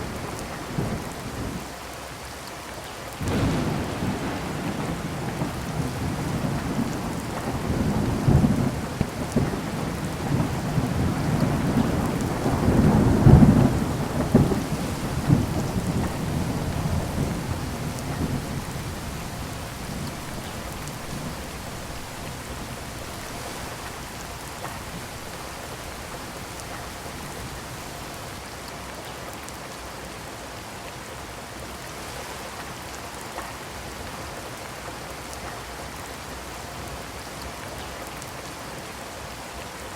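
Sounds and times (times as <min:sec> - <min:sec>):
thunder rolling: 0:00.0 - 0:01.6, 0:03.2 - 0:28.4
heavy rain falling: 0:00.0 - 0:39.9.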